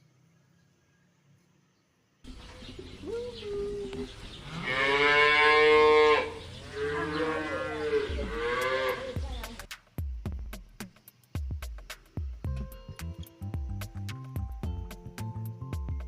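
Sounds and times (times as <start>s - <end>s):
cow mooing: 4.4s - 9.2s.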